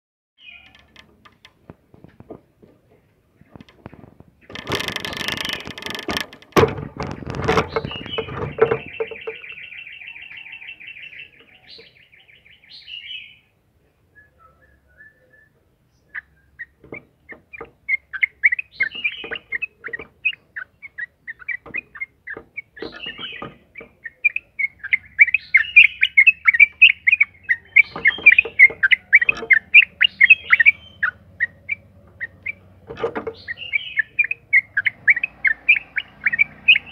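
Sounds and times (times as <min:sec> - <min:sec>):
bird chirping notes: 0:00.4 - 0:01.4, 0:02.9 - 0:13.6, 0:14.2 - 0:36.9.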